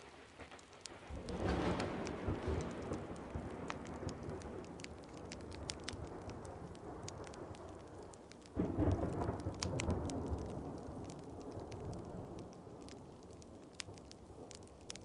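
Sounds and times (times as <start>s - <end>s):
steady rain: 0.0s - 15.0s
wood fire crackling: 0.0s - 15.0s
roll of thunder: 0.9s - 15.0s.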